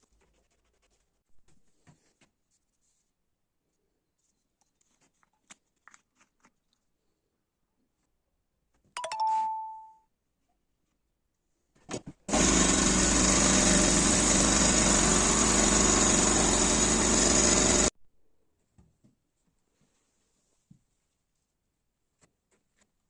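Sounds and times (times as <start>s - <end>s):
air compressor running: 12.3s - 17.9s.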